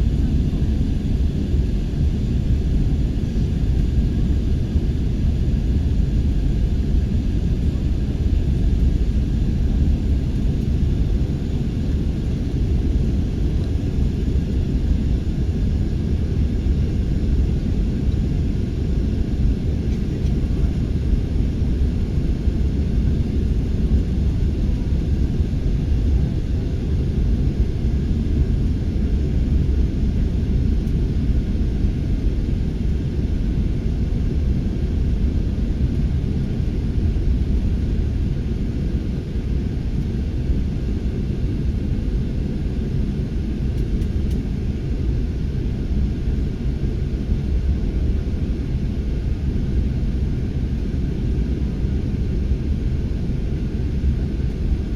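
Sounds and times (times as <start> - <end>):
airliner cabin engine rumble: 0.0 - 54.9.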